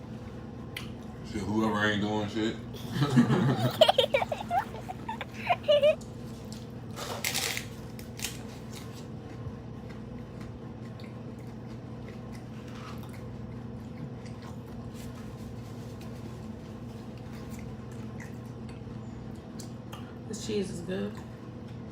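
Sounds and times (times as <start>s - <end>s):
steady low hum: 0.0s - 7.0s.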